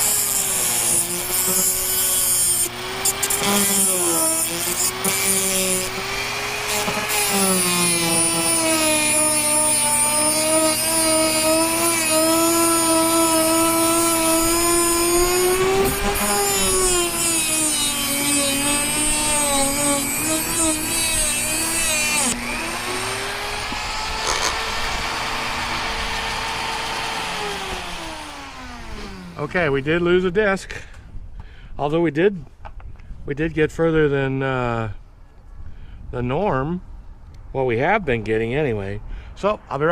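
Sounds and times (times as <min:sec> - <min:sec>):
rotary tool motor whine: 0:00.0 - 0:29.5
cut-off disc grinding metal: 0:00.0 - 0:30.1.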